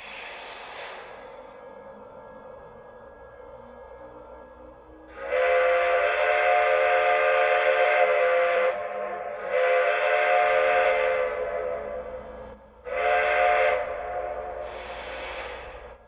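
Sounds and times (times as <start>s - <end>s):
steam hiss: 0.0s - 2.0s, 5.1s - 16.0s
steam whistle blasts: 5.0s - 16.0s.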